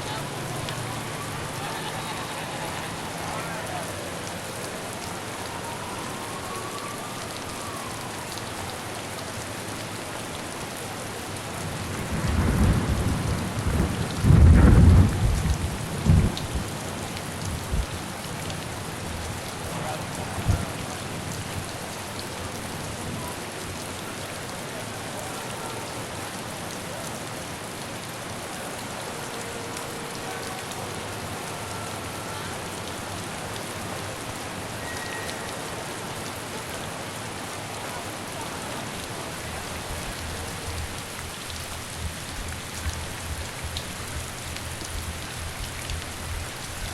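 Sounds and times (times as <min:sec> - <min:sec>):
steady rain: 0:00.0 - 0:46.9
thunder rumbling: 0:11.6 - 0:18.0.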